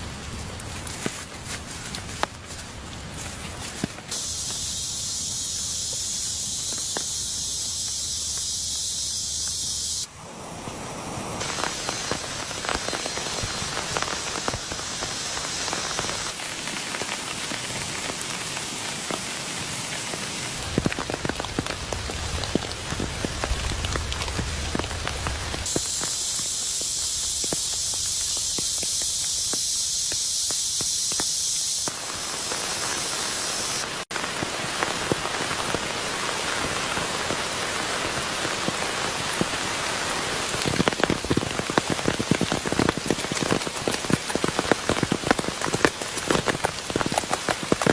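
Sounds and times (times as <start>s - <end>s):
heavy rain falling: 10.4s - 31.2s, 31.8s - 47.9s
raindrops tapping on surfaces: 11.4s - 31.4s, 34.1s - 47.9s.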